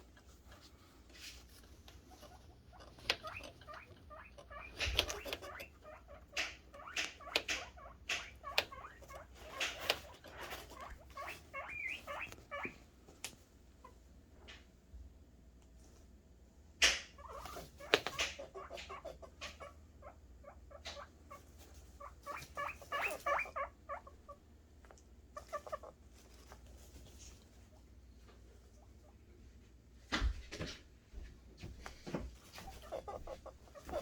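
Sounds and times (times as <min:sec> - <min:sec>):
guinea pigs squeaking: 0:00.0 - 0:12.9, 0:16.8 - 0:29.3, 0:32.3 - 0:34.0
rustling: 0:00.0 - 0:14.8, 0:20.8 - 0:34.0.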